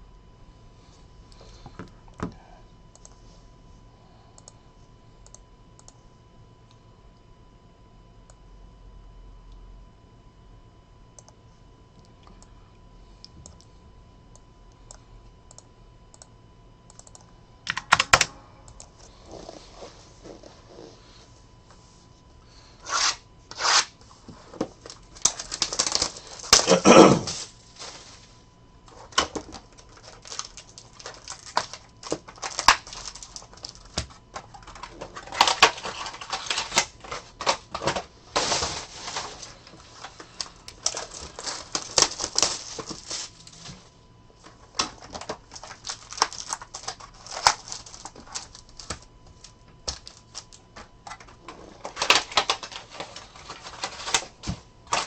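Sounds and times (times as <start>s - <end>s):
plastic wrapping crinkling and tearing: 24.8s - 28.3s, 28.9s - 43.8s, 44.7s - 55.0s.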